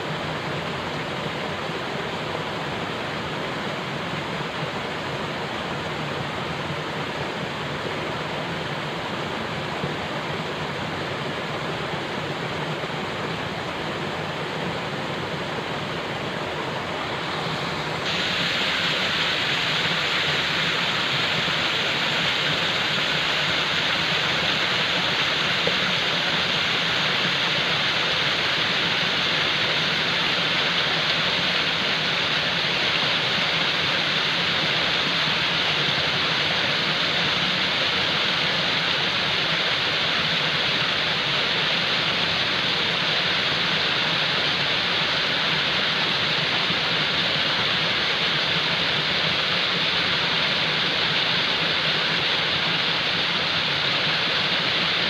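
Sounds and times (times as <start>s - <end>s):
falling water rushing: 0.0s - 55.0s.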